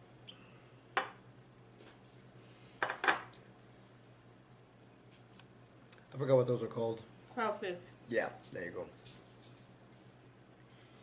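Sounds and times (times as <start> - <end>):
tableware clicking and clinking: 2.0 - 3.4.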